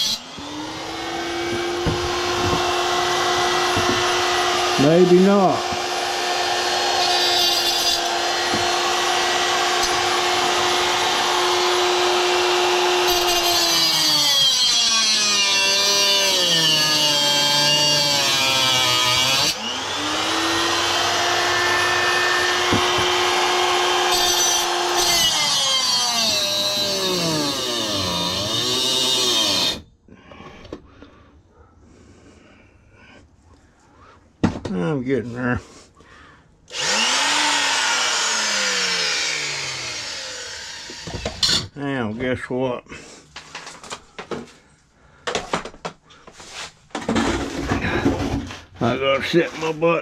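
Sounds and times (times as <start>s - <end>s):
electric grinder whining: 0.0s - 29.8s, 36.7s - 41.7s.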